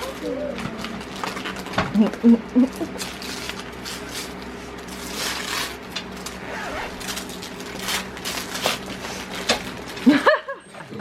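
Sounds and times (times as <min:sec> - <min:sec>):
paper rustling and crinkling: 0:03.0 - 0:10.0.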